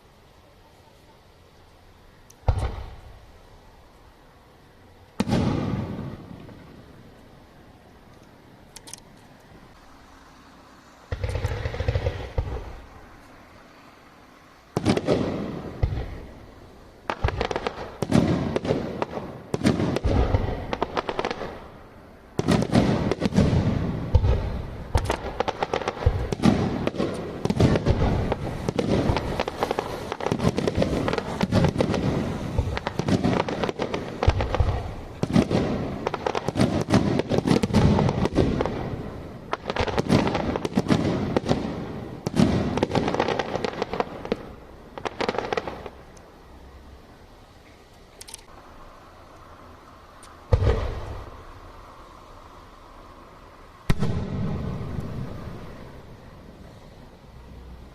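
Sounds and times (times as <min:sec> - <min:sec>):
aerial fireworks booms and cracks: 0:05.2 - 0:06.6, 0:11.1 - 0:12.8, 0:14.8 - 0:16.2, 0:17.1 - 0:21.6, 0:22.4 - 0:46.0, 0:50.5 - 0:51.3, 0:53.9 - 0:55.8.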